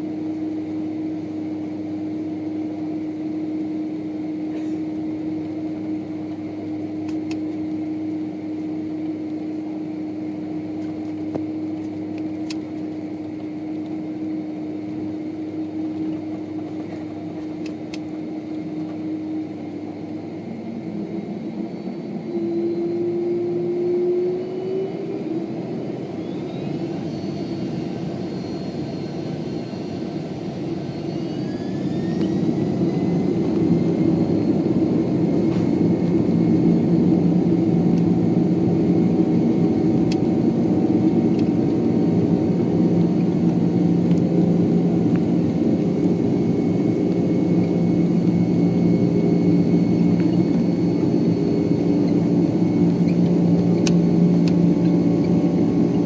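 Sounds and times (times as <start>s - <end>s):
jet engines whining: 0.0s - 56.0s.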